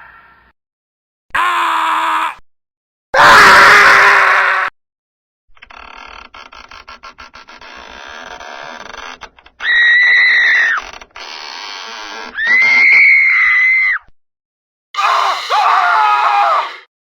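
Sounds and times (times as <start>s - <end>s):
high-pitched human screams: 1.3s - 2.4s, 3.2s - 4.7s, 9.6s - 10.8s, 12.4s - 14.1s, 15.0s - 16.9s
crackly noise: 5.6s - 12.4s.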